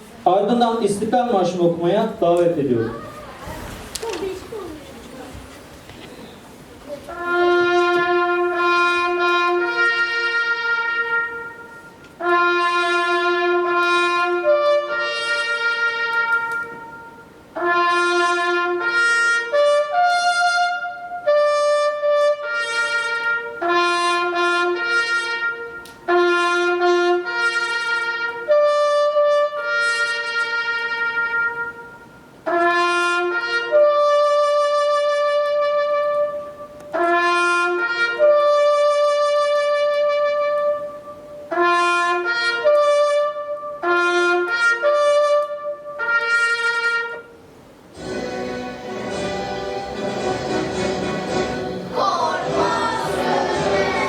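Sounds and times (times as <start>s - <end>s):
solo trumpet solemn melody: 7.1s - 54.0s.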